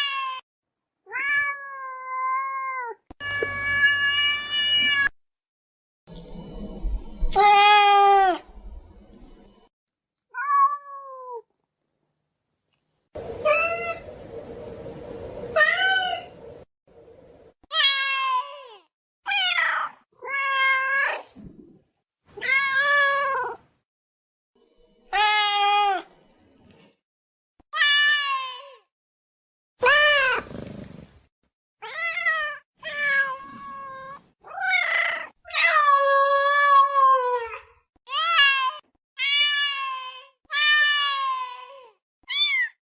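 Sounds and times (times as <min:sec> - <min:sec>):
cat meowing: 0:42.3 - 0:42.8.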